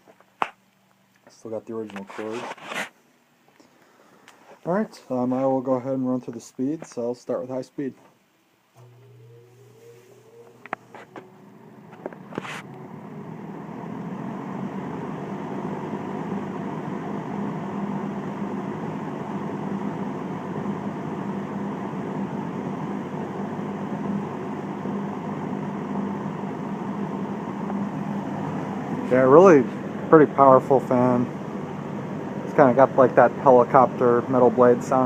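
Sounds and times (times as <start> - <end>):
fan blades whirring: 8.8 - 35.0.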